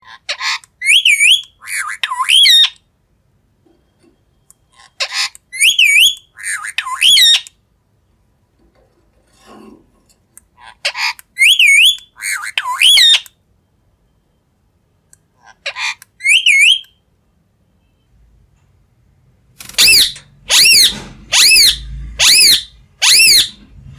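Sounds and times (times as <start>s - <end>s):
parrot whistling calls: 0.4s - 2.8s, 5.0s - 7.5s, 11.4s - 13.3s, 15.8s - 17.0s, 19.8s - 23.6s.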